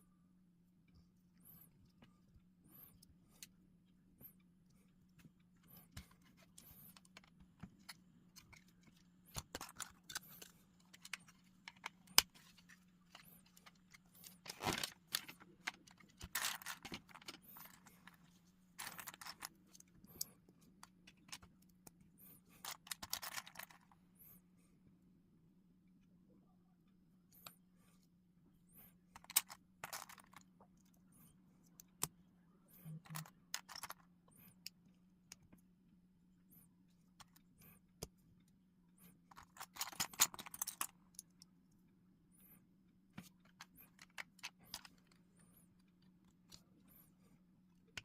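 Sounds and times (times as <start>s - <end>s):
faint low hum: 0.0s - 48.0s
plastic pieces clicking: 5.9s - 18.2s, 18.8s - 21.6s, 22.6s - 23.8s, 29.2s - 30.4s, 32.9s - 34.1s, 39.3s - 41.4s
rummaging through loose pieces: 7.8s - 18.2s, 18.8s - 19.6s.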